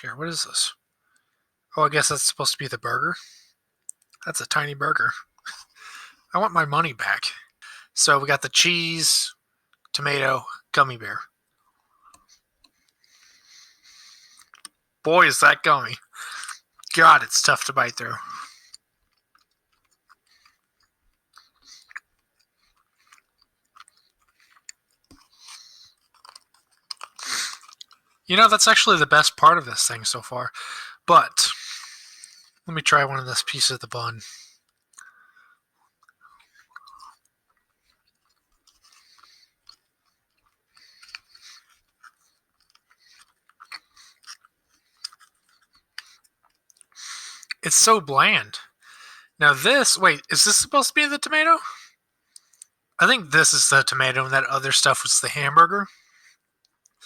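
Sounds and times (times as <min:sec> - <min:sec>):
person chewing gummy candy: 0:11.4 - 0:14.8, 0:16.0 - 0:17.0, 0:17.6 - 0:28.3, 0:31.5 - 0:47.6, 0:52.3 - 0:52.9, 0:56.0 - 0:57.0.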